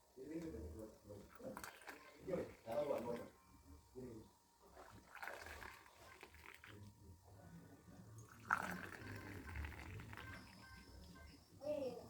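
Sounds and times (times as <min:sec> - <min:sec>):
liquid being poured: 0:04.7 - 0:06.8, 0:08.3 - 0:10.4.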